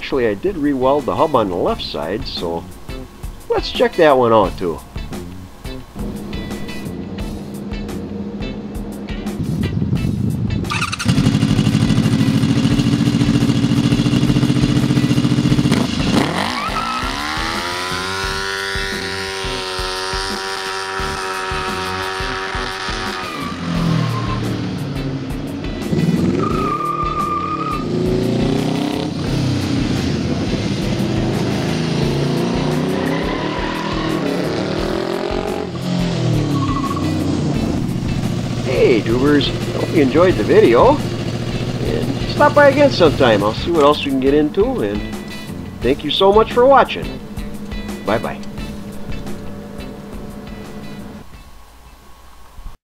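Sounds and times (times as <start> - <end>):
motorcycle engine revving: 1.1 - 51.3
high squeal: 23.2 - 24.6, 26.3 - 27.9, 36.4 - 37.2.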